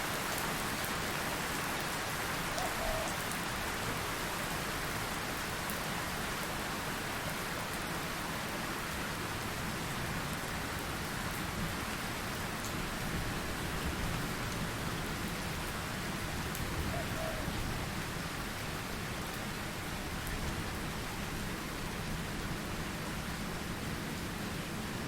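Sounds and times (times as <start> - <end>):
steady rain hiss: 0.0 - 25.0.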